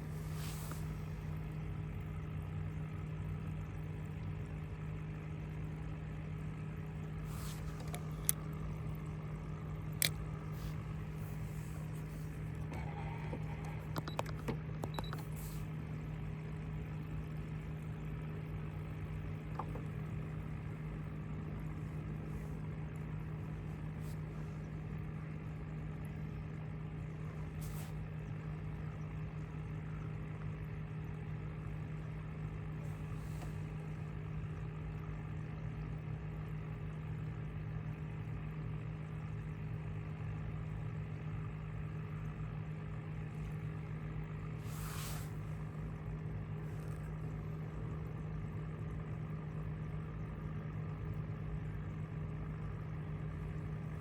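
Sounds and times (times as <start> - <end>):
motor humming: 7.2 - 18.0, 18.6 - 24.6.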